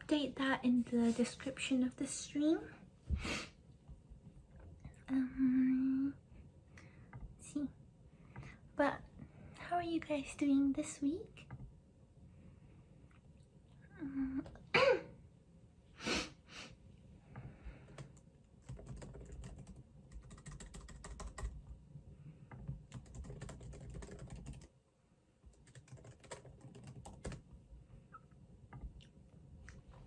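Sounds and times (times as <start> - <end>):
computer keyboard typing: 17.8 - 21.7, 22.6 - 24.7, 25.5 - 27.4.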